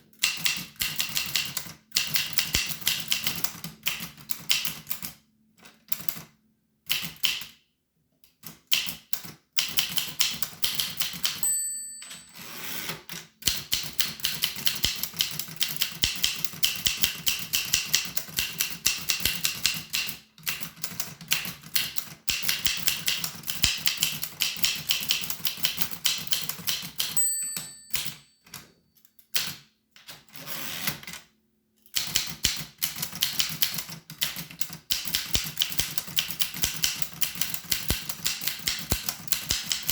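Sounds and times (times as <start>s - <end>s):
typewriter key strikes: 0.2s - 5.0s, 8.7s - 12.3s, 13.2s - 28.6s, 31.9s - 39.9s
typewriter bell ding: 11.3s - 12.8s, 27.0s - 28.6s.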